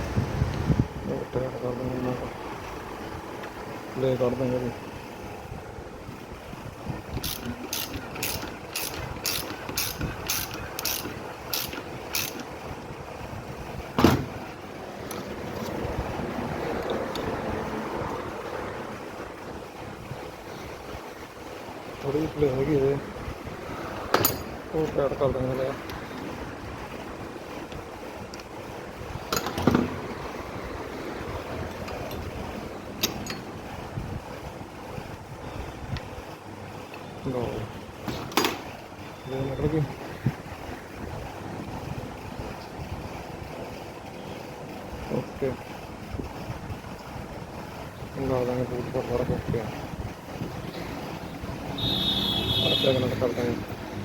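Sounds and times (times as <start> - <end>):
steady rushing background noise: 0.0 - 54.0
ratchet wrench clicking: 7.2 - 12.6.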